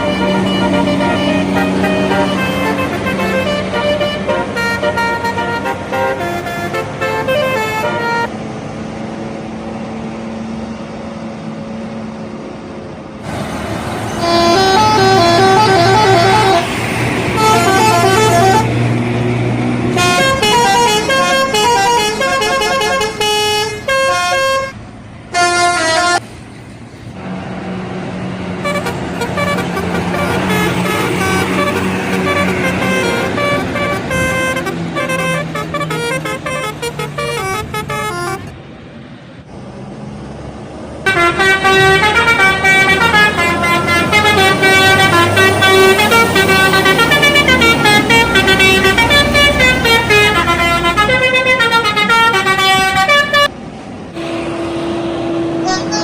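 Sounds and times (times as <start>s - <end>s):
multi-tone musical air horns: 0.0s - 8.3s, 14.1s - 18.8s, 19.9s - 26.2s, 28.6s - 38.5s, 41.0s - 53.5s
bus engines running: 0.0s - 56.0s.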